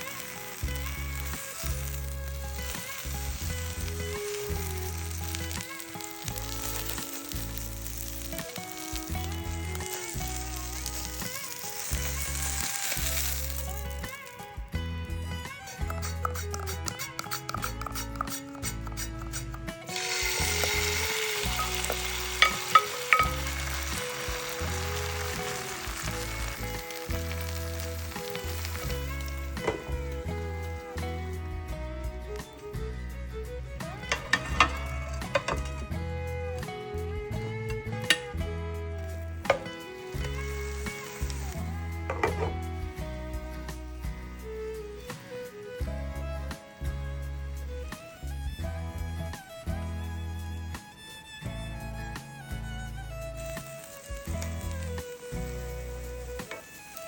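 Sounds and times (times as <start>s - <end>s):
omelette sizzling in a pan: 0.0s - 36.7s, 39.0s - 48.4s, 51.8s - 57.0s
background music with bass: 0.0s - 57.0s.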